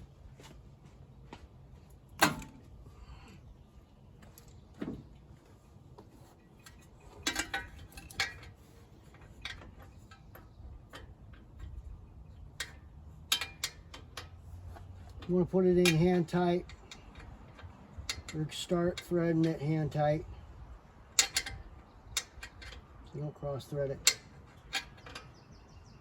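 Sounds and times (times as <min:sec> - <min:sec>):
metal clicks and clinks: 0:06.6 - 0:14.4, 0:15.1 - 0:20.0, 0:21.1 - 0:23.1, 0:23.9 - 0:25.4.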